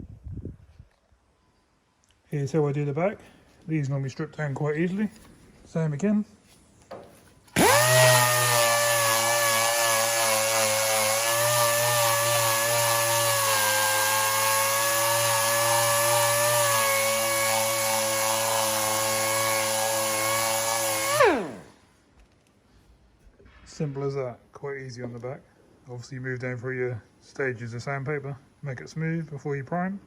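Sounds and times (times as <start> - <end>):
power sander grinding: 7.5 - 21.7.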